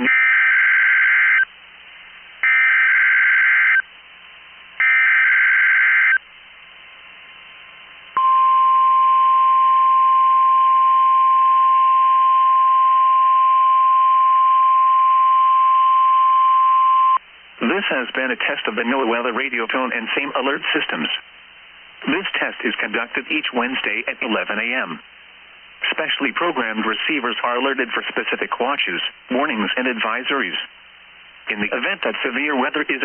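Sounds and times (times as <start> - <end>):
steady alarm tone: 2.4 - 3.8, 4.8 - 6.2.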